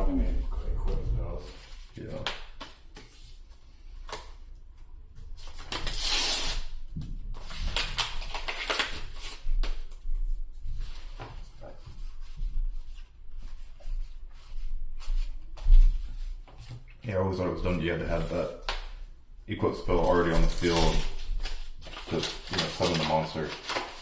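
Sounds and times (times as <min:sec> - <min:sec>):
foil wrappers crinkling: 0:07.4 - 0:09.9, 0:19.8 - 0:24.0.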